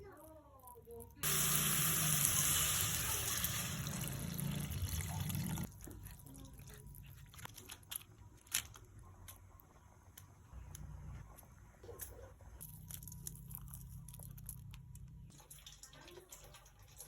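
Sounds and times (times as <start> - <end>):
water running from tap: 1.2 - 5.7, 15.3 - 17.0.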